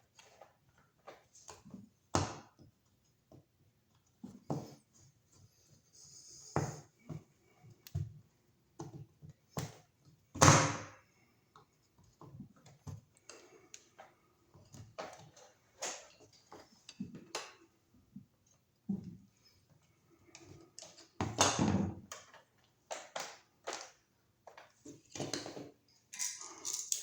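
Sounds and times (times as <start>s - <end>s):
tools clattering: 25.2s - 27.0s.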